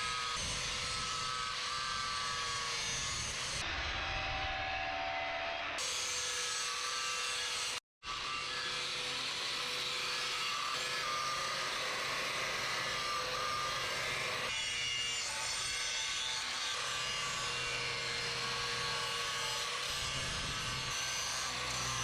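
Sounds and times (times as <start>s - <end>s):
power tool running: 5.8s - 22.0s.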